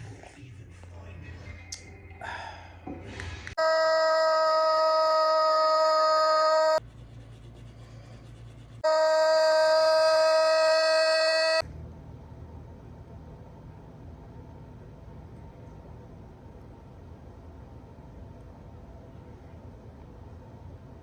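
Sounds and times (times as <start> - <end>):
low hum: 0.0 - 21.0
long horn blasts: 8.8 - 11.6.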